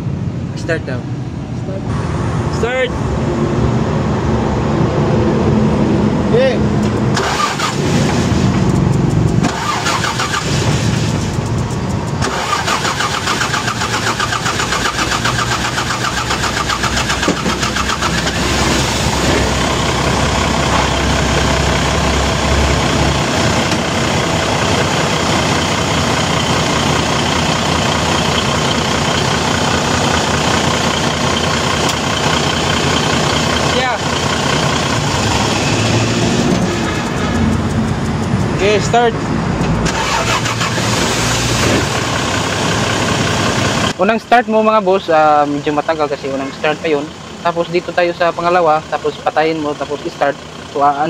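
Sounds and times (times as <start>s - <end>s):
diesel engine idling: 0.0s - 51.0s
diesel engine cranking: 6.2s - 44.0s.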